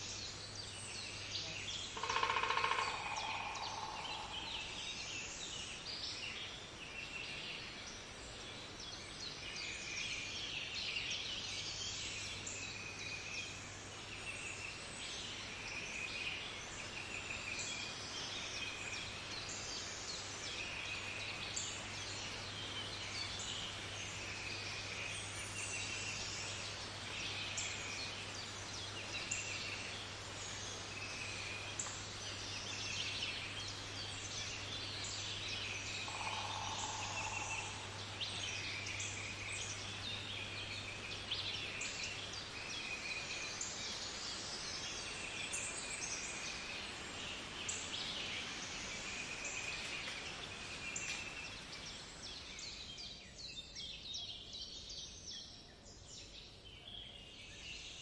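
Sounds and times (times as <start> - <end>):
birds trilling and chirping: 1.4 - 5.0.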